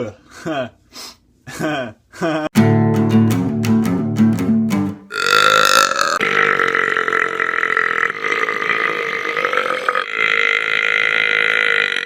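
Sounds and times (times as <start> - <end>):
person burping: 5.1 - 6.2.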